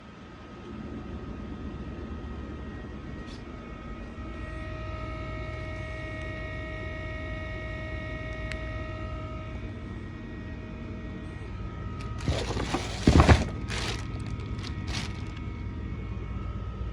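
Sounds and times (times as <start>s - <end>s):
vacuum cleaner motor whining: 12.0s - 15.4s.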